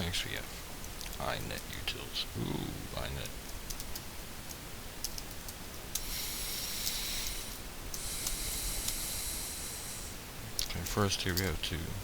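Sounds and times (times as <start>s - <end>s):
faint clicks: 3.2s - 6.1s, 6.8s - 9.0s
hiss of rushing air: 6.0s - 10.2s.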